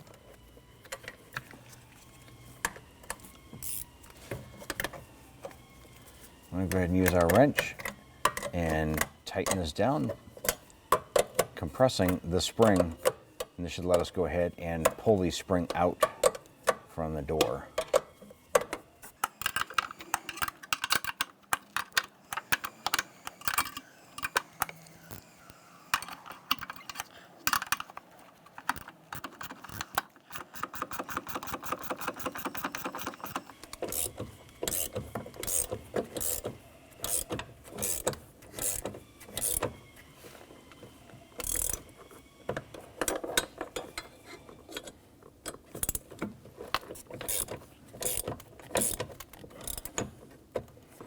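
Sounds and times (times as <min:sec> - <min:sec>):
wrench ratcheting clicks: 0:19.2 - 0:24.8, 0:26.0 - 0:39.7, 0:41.4 - 0:41.8, 0:47.2 - 0:50.0.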